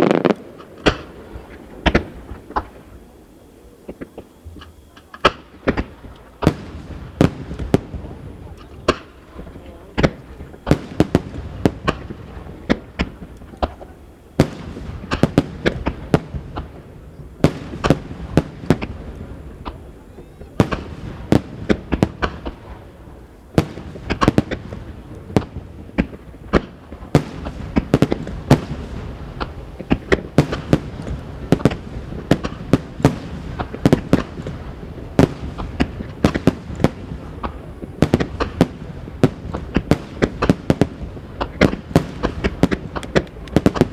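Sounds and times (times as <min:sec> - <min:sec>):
firework shells bursting: 0:00.0 - 0:03.0, 0:23.6 - 0:43.9.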